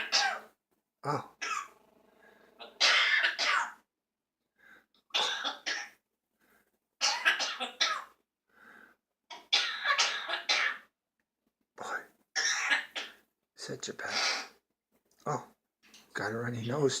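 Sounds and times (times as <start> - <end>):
bird coughing: 0.0 - 1.8, 2.6 - 3.9, 5.1 - 6.0, 7.0 - 8.2, 9.3 - 10.9, 12.4 - 13.2, 14.0 - 14.6.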